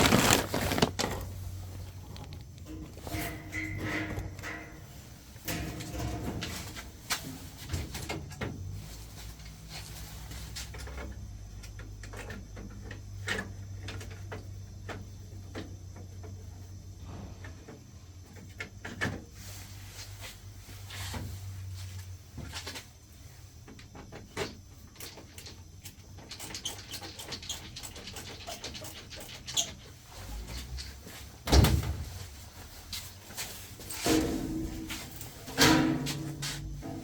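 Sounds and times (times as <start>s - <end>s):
handling clicks and knocks: 0.0s - 1.3s.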